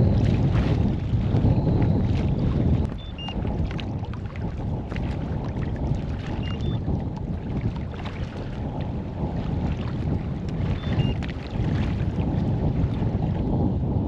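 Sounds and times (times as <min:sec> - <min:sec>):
waves splashing against kayak hull: 0:00.0 - 0:13.4
wind buffeting microphone: 0:00.0 - 0:14.0
short high beeps: 0:02.9 - 0:03.4, 0:06.4 - 0:06.8, 0:10.8 - 0:11.2.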